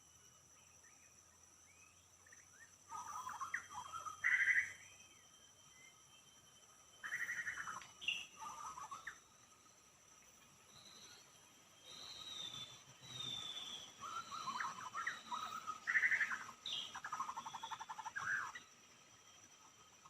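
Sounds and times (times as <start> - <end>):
bird singing whistled phrases: 7.0 - 9.2, 10.8 - 18.6.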